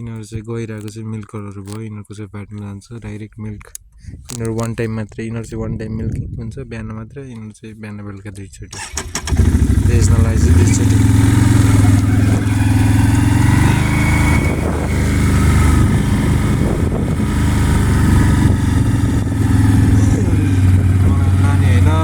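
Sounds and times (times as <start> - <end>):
small engine running: 8.8 - 22.0.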